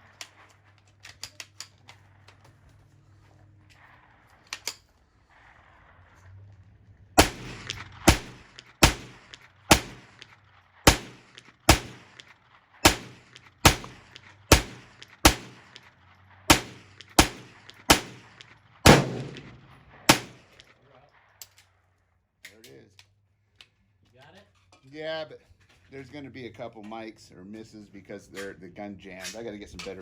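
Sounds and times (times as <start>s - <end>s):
rifle shots in rapid string: 7.2s - 20.6s.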